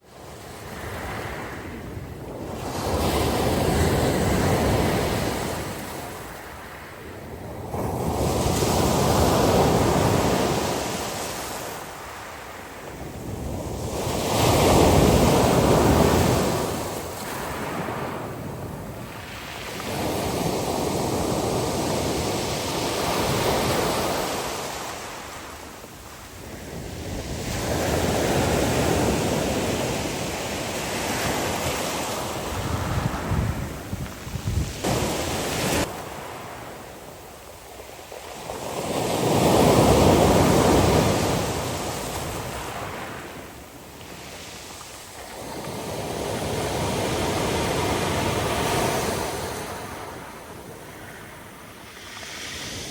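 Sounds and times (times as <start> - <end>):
wind buffeting microphone: 26.0 - 37.1
sea waves breaking: 27.2 - 37.2.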